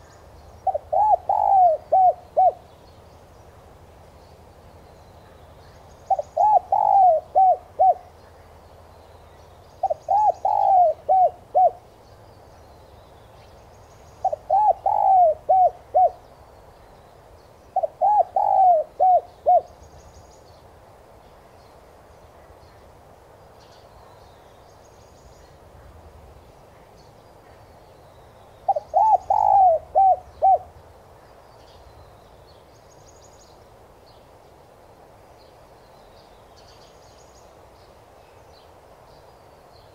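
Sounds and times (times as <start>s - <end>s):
dove cooing: 0.6s - 2.7s, 6.1s - 8.2s, 9.8s - 11.9s, 14.2s - 16.2s, 17.8s - 19.7s, 28.7s - 30.8s.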